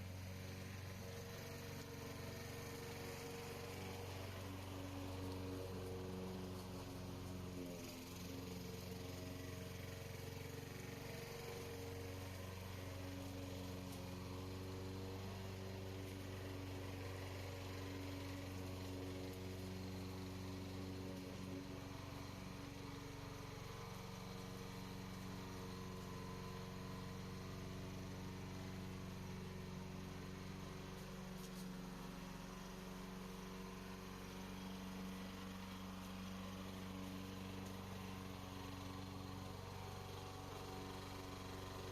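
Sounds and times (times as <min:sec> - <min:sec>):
lawn mower engine running: 0:00.0 - 0:41.9.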